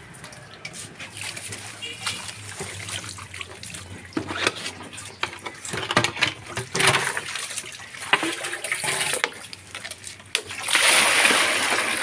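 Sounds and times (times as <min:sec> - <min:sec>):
water pouring and splashing: 0:00.0 - 0:12.0.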